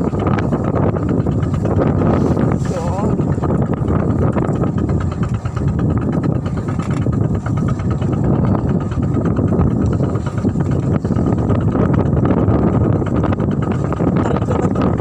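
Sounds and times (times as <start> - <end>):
boat engine running: 0.0 - 15.0.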